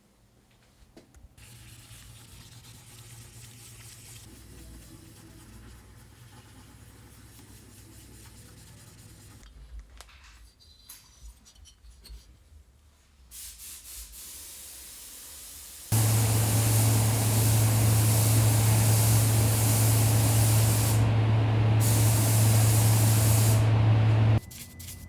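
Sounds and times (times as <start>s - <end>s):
rushing air hiss: 15.5s - 24.3s
low electric hum: 15.9s - 24.4s.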